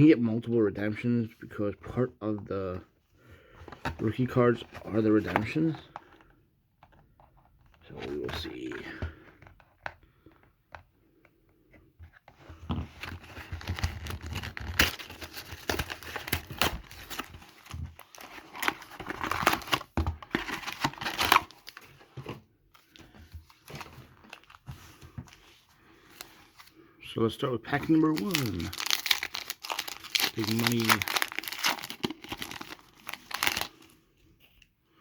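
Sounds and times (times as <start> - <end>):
card pack wrappers crinkling: 13.1 - 22.0, 27.7 - 33.9.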